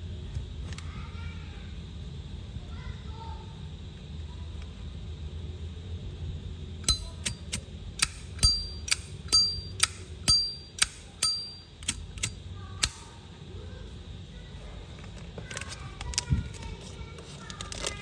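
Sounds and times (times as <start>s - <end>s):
lighter lid clicking: 6.9s - 13.0s.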